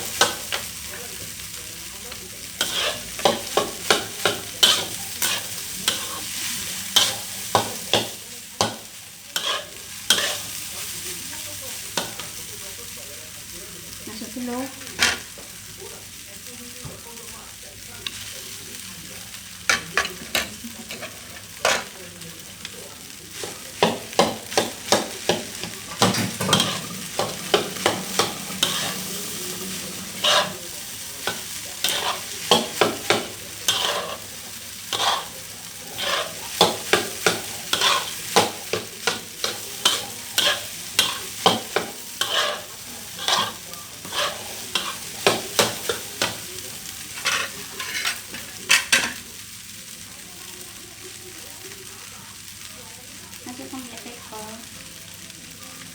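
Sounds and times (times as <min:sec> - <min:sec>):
rice sizzling in a pan: 0:00.0 - 0:55.9
spatula scraping and knocking pan: 0:02.6 - 0:06.4, 0:09.4 - 0:10.6, 0:19.7 - 0:22.0, 0:23.3 - 0:34.3, 0:34.9 - 0:35.3, 0:35.9 - 0:49.2.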